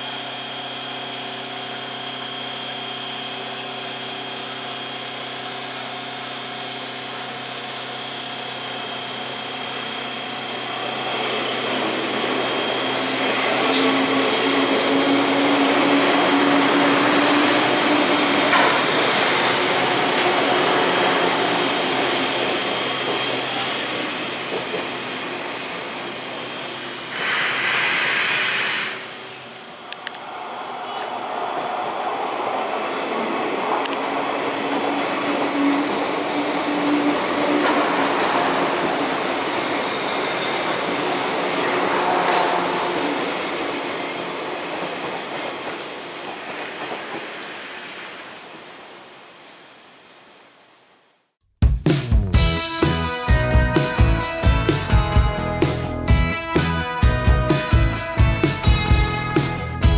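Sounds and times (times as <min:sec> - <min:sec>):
train electrical hum: 0:00.0 - 0:51.0
train motors and wheels rumbling: 0:00.0 - 0:51.2
short hiss: 0:27.1 - 0:30.0.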